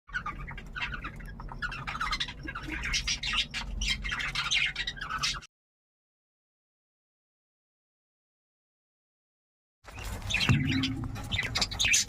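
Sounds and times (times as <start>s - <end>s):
cockatiel squawking and chattering: 0.1s - 5.5s, 10.0s - 12.0s
low steady hum: 10.4s - 12.0s.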